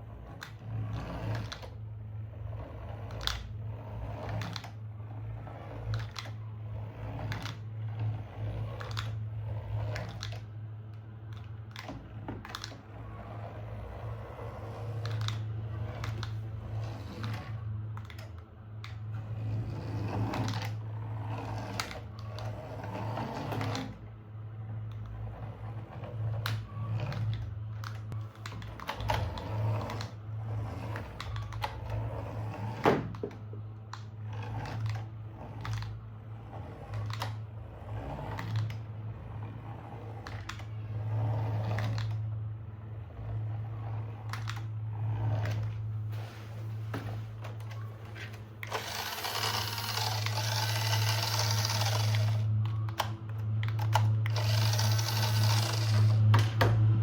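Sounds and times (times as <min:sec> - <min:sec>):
plastic toy parts clicking: 0:15.0 - 0:15.4, 0:18.0 - 0:19.0, 0:33.9 - 0:36.0, 0:44.3 - 0:44.7, 0:48.6 - 0:56.6.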